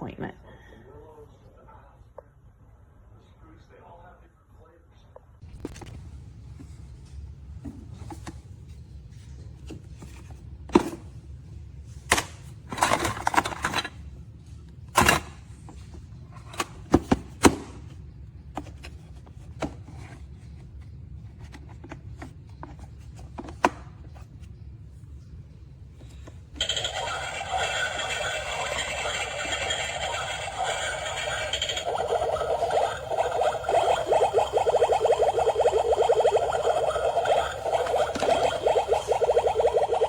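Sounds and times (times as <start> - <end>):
toy electronic buzzing tones: 26.6 - 40.0.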